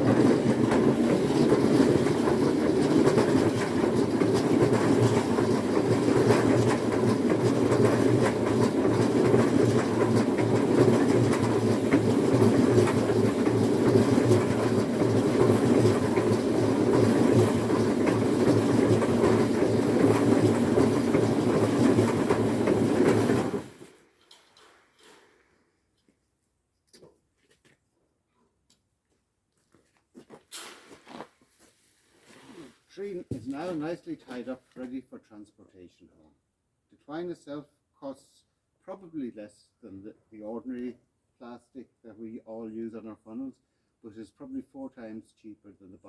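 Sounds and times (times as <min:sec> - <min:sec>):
tree baler humming and clattering: 0:00.0 - 0:24.4.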